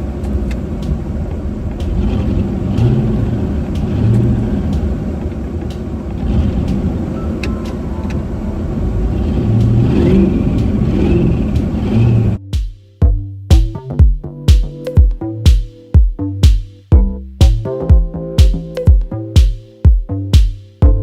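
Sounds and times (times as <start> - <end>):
car engine revving: 0.0 - 12.5.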